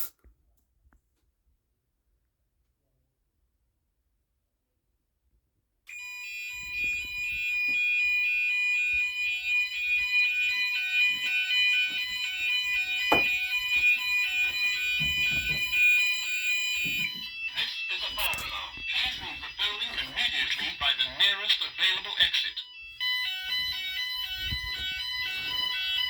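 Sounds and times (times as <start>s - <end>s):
steady high-pitched alarm tone: 5.9s - 26.0s
two-tone fire alarm sounder: 5.9s - 26.0s.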